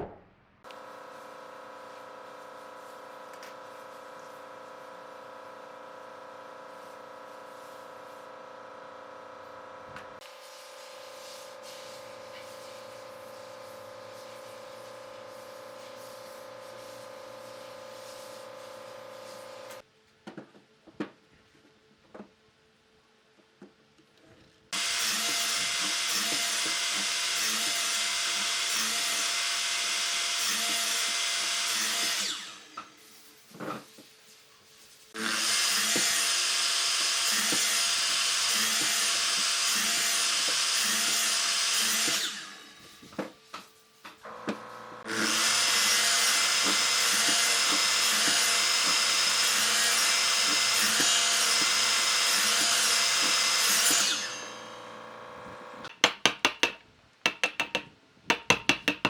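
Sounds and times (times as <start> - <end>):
power tool working wood: 24.8 - 32.7, 35.2 - 42.9, 44.2 - 55.9.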